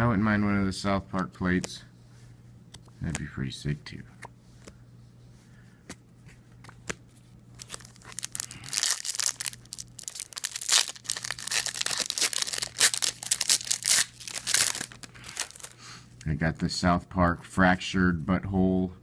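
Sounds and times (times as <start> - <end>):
plastic wrapper tearing and crinkling: 7.6 - 15.8.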